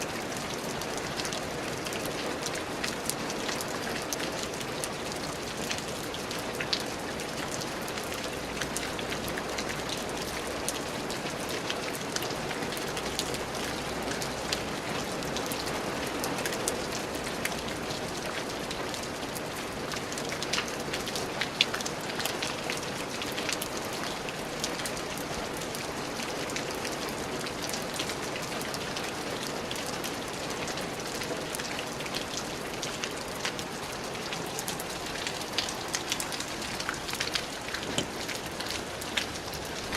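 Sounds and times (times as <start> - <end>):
raindrops pattering on hard surface: 0.0 - 39.9
steady rain falling: 0.0 - 39.9.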